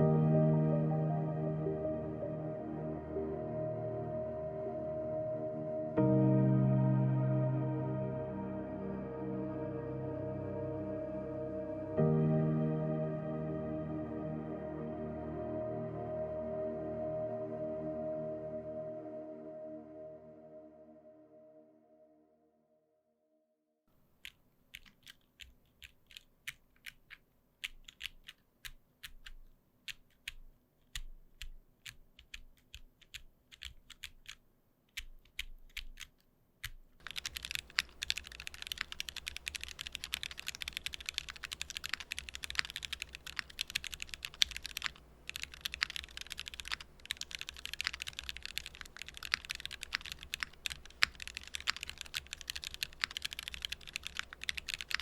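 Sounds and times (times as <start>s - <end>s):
mechanical keyboard typing: 24.2s - 55.0s.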